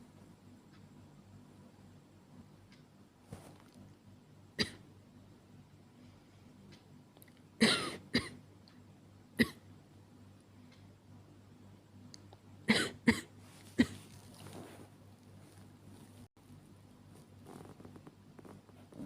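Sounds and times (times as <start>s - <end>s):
woman coughing: 7.6s - 8.4s, 12.7s - 14.0s.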